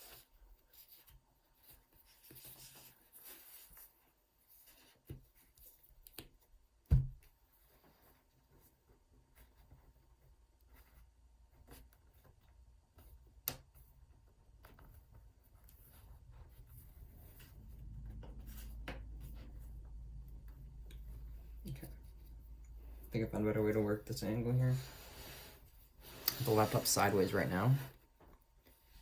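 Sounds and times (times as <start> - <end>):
scraping at laptop case seam: 25.2 - 28.0.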